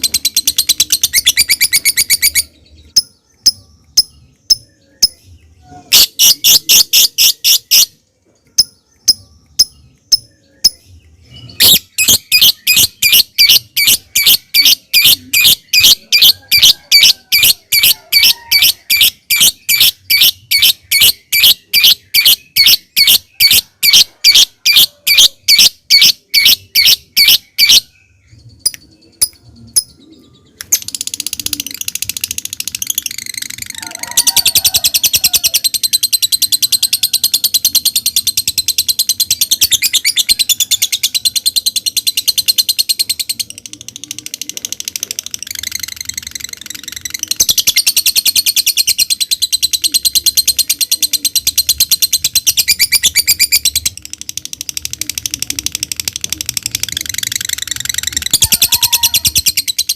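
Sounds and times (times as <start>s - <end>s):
lovebird chirping and chattering: 0.0s - 59.9s.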